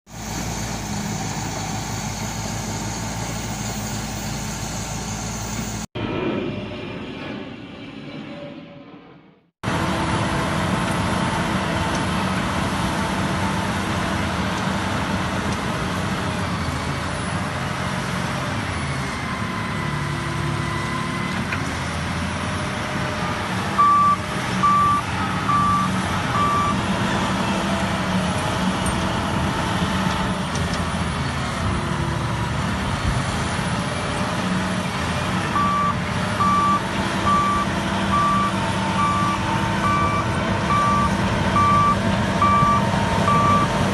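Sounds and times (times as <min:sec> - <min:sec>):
bulldozer running: 0:00.1 - 0:05.9, 0:09.6 - 0:43.9
reversing alarm beeping: 0:23.8 - 0:26.8, 0:35.5 - 0:43.8.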